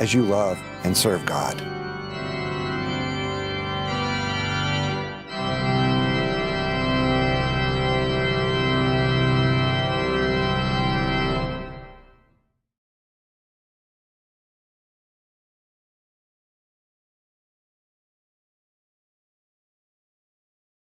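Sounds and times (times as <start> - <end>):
organ chords: 0.0 - 12.4.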